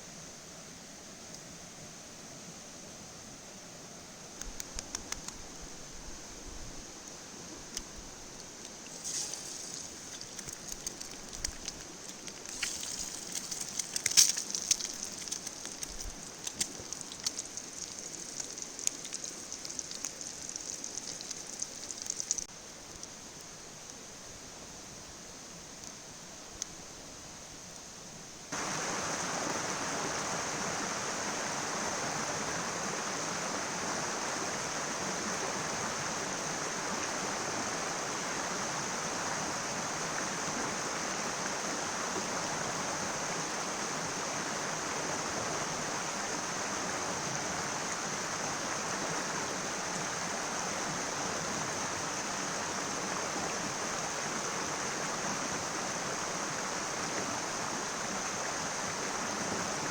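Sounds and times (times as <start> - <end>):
river water rushing: 8.2 - 22.5, 28.5 - 59.9.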